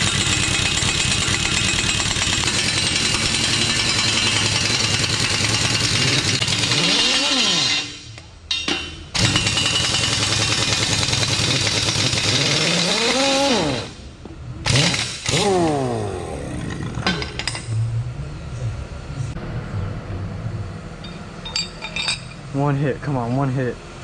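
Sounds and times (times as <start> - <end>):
impact wrench whining and hammering: 0.0 - 17.8.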